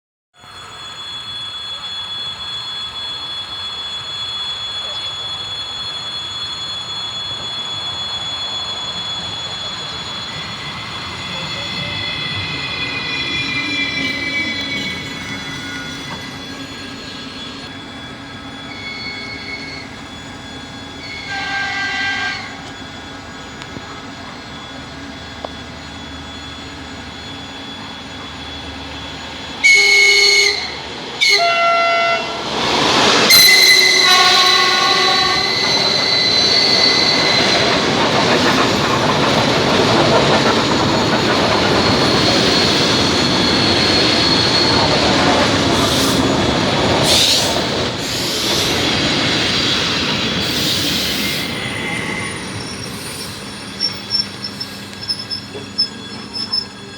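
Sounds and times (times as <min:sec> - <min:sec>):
train rolling past: 0:00.4 - 0:56.9
train slowing whine: 0:00.4 - 0:56.9
train horn blasts: 0:21.0 - 0:22.8, 0:29.6 - 0:32.4, 0:33.3 - 0:35.7.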